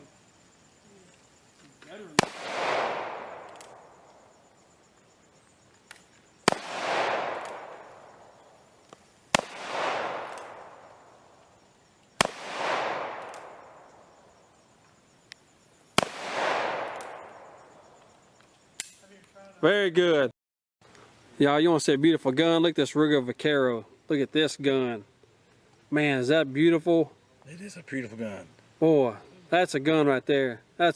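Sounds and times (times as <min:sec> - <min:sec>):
revolver shots echoing: 0:02.2 - 0:04.1, 0:06.5 - 0:08.3, 0:09.3 - 0:11.1, 0:12.2 - 0:13.8, 0:16.0 - 0:17.6.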